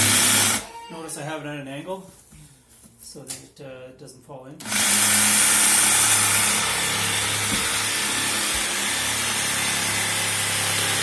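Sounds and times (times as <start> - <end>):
electric jigsaw cutting pumpkin: 0.0 - 0.7, 4.6 - 11.0.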